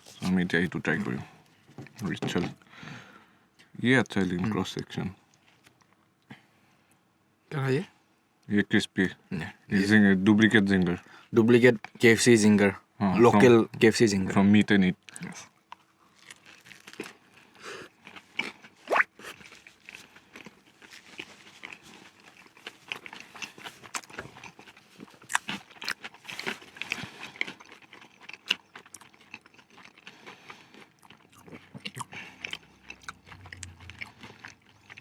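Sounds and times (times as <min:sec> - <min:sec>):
chewing: 0:15.0 - 0:35.0
crispy burger crunching: 0:15.0 - 0:35.0.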